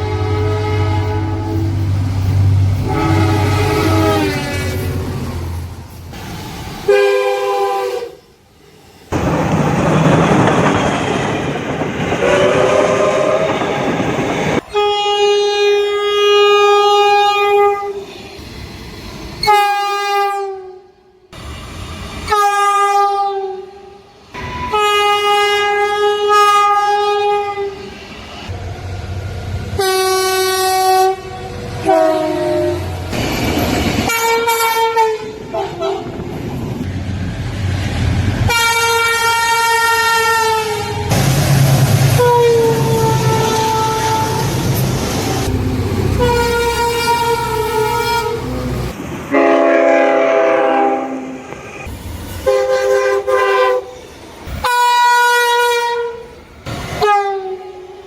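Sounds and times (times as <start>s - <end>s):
train horn blasts: 0.0s - 5.1s, 6.9s - 8.3s, 12.2s - 13.9s, 14.6s - 18.0s, 19.4s - 21.0s, 22.3s - 27.8s, 29.8s - 33.0s, 34.1s - 36.2s, 38.5s - 41.2s, 42.2s - 44.6s, 46.1s - 48.6s, 49.3s - 51.5s, 52.4s - 54.0s, 54.6s - 56.3s, 57.0s - 58.0s
train rumble and rail clatter: 0.0s - 58.0s.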